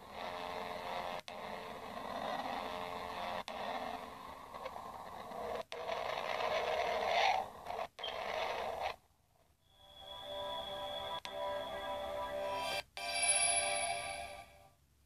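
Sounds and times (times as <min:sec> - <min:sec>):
crackling static hiss: 0:00.0 - 0:15.0
faint steady tones: 0:09.1 - 0:15.0.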